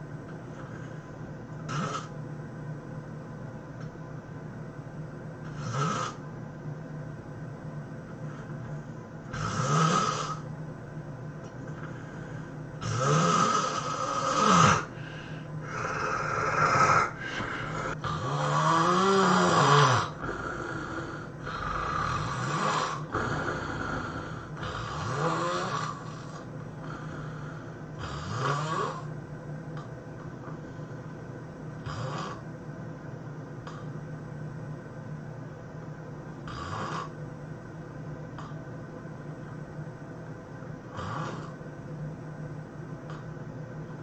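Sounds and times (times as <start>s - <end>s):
person snoring loudly: 1.7s - 2.1s, 5.5s - 6.2s, 9.3s - 10.5s, 12.8s - 29.1s, 31.8s - 32.4s, 36.4s - 37.2s, 40.9s - 41.6s.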